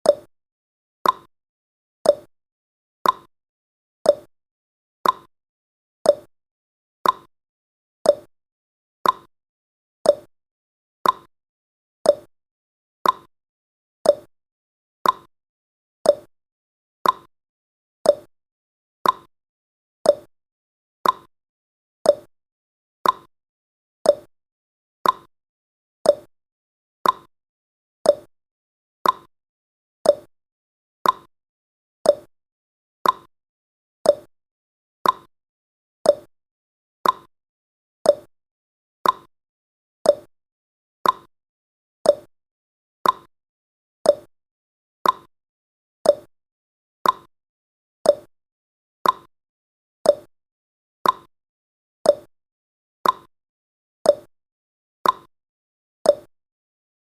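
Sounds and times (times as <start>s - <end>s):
timer ticking tick-tock: 0.0s - 0.3s, 1.0s - 1.3s, 2.0s - 2.3s, 3.0s - 3.3s, 4.0s - 4.3s, 5.0s - 5.3s, 6.0s - 6.3s, 7.0s - 7.3s, 8.0s - 8.3s, 9.0s - 9.3s, 10.0s - 10.3s, 11.0s - 11.3s, 12.0s - 12.3s, 13.0s - 13.3s, 14.0s - 14.3s, 15.0s - 15.3s, 16.0s - 16.3s, 17.0s - 17.3s, 18.0s - 18.3s, 19.0s - 19.3s, 20.0s - 20.3s, 21.0s - 21.3s, 22.0s - 22.3s, 23.0s - 23.3s, 24.0s - 24.3s, 25.0s - 25.3s, 26.0s - 26.3s, 27.0s - 27.3s, 28.0s - 28.3s, 29.0s - 29.3s, 30.0s - 30.3s, 31.0s - 31.3s, 32.0s - 32.3s, 33.0s - 33.3s, 34.0s - 34.3s, 35.0s - 35.3s, 36.0s - 36.3s, 37.0s - 37.3s, 38.0s - 38.3s, 39.0s - 39.3s, 40.0s - 40.3s, 41.0s - 41.3s, 42.0s - 42.3s, 43.0s - 43.3s, 44.0s - 44.3s, 45.0s - 45.3s, 46.0s - 46.3s, 47.0s - 47.3s, 48.0s - 48.3s, 49.0s - 49.3s, 50.0s - 50.3s, 51.0s - 51.3s, 52.0s - 52.3s, 53.0s - 53.3s, 54.1s - 54.3s, 55.0s - 55.3s, 56.1s - 56.3s.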